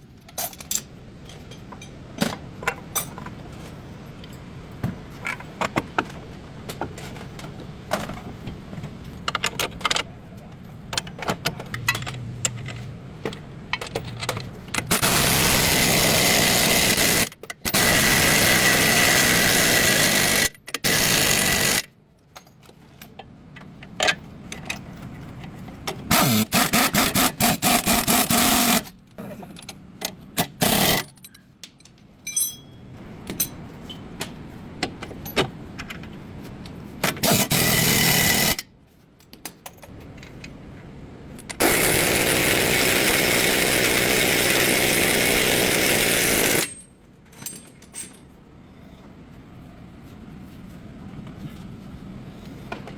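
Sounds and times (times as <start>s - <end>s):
garage background noise: 0.0s - 52.9s
power tool running: 14.9s - 21.9s, 26.1s - 28.8s, 37.2s - 38.6s, 41.6s - 46.7s.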